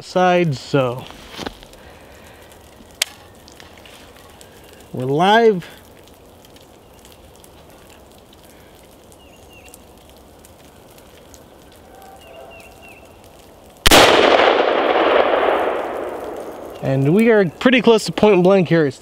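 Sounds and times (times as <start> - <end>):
rifle shot with echo: 13.8 - 16.8.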